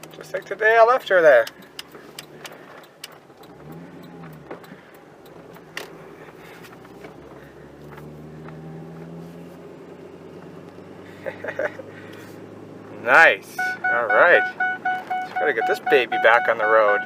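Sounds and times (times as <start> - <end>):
sharp clicks: 0.0 - 7.2
truck engine running: 0.0 - 17.0.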